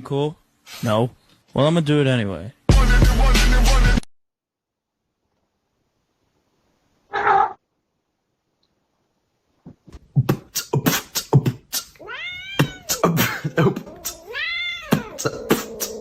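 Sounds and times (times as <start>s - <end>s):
beatboxing clicks and kicks: 9.7s - 12.0s
beatboxed meow sounds: 10.2s - 16.0s.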